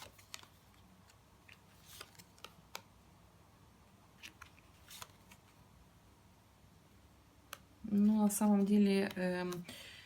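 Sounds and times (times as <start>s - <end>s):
cards sliding: 0.0s - 2.9s, 4.2s - 5.6s.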